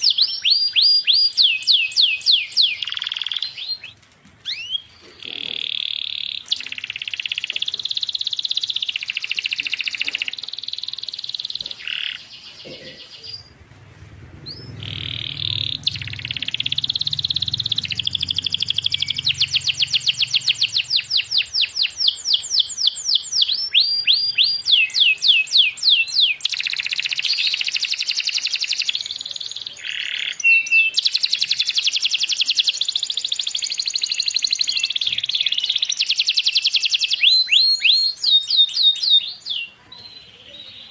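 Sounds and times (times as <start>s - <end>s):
canary singing trills: 0.0s - 40.9s
low hum: 13.4s - 20.9s.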